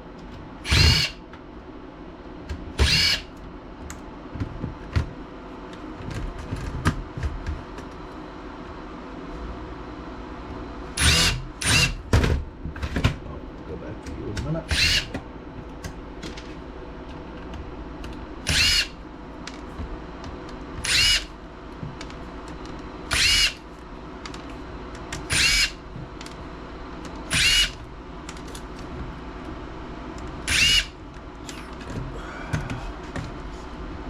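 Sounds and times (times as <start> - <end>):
power driver whining: 0.6 - 1.2, 2.7 - 3.4, 10.9 - 12.1, 14.5 - 16.0, 17.9 - 19.0, 20.8 - 21.4, 23.1 - 23.7, 25.1 - 26.4, 27.0 - 27.9, 30.4 - 32.0.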